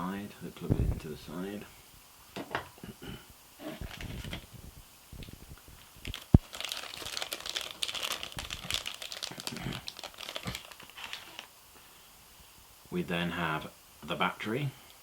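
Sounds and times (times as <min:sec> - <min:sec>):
packaging crinkling and rustling: 0:03.6 - 0:04.6, 0:05.2 - 0:11.5.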